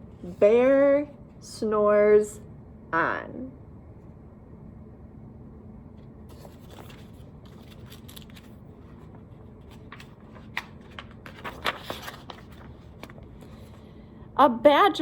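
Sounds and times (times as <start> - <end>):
low room hum: 0.0 - 15.0
paper page rustling: 6.3 - 13.9.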